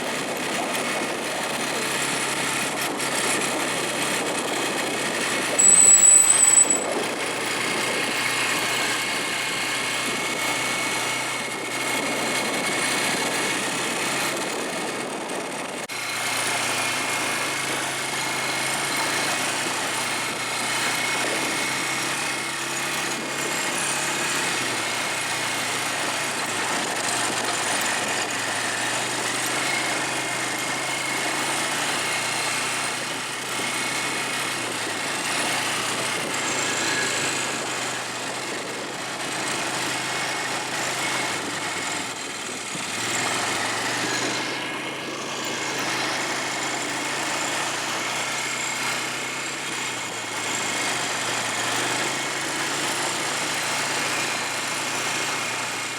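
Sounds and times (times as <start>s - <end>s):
small engine running: 0.0s - 55.9s
shrill high-pitched squeal: 5.6s - 7.0s.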